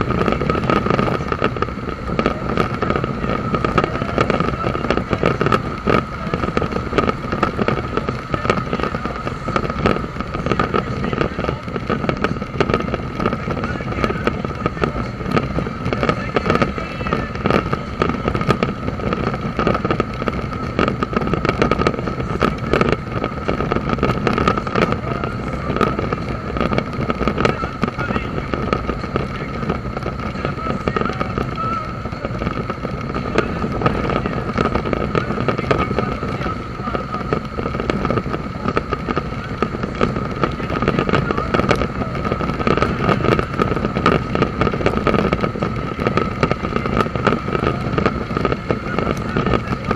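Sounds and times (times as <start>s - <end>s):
constant whine: 0.0s - 49.9s
heavy wind rush: 0.0s - 49.9s
motorcycle engine running: 0.0s - 49.9s.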